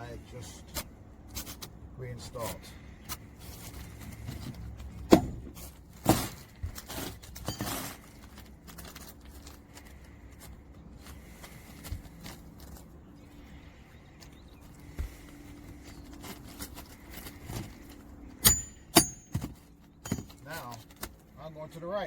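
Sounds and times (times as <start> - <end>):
hammer striking nail into shingle: 5.1 - 5.5, 18.4 - 20.4.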